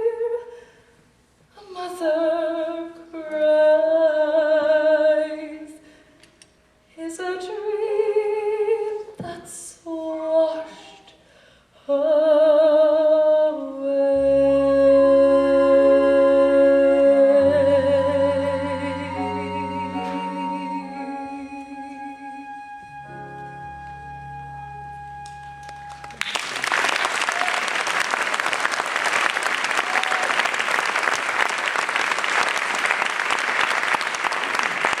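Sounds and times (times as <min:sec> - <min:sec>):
woman singing with vibrato: 0:01.6 - 0:05.8, 0:06.9 - 0:11.1, 0:11.8 - 0:22.8
low sustained accompaniment: 0:14.0 - 0:26.3
held musical chord with deep bass: 0:14.2 - 0:26.1
audience applause: 0:25.2 - 0:35.0.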